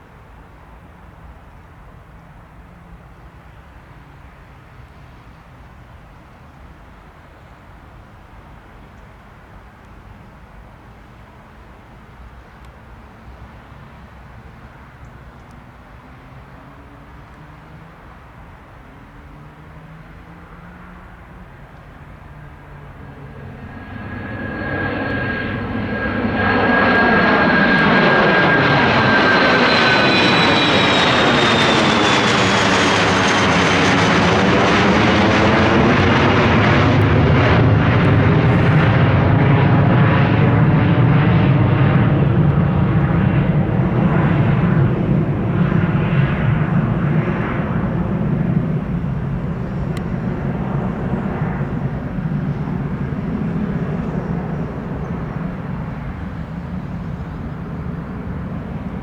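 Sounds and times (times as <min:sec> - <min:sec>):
jet engines passing: 0:10.9 - 0:59.0
low jet rumble: 0:21.0 - 0:59.0
high jet whine: 0:22.5 - 0:59.0.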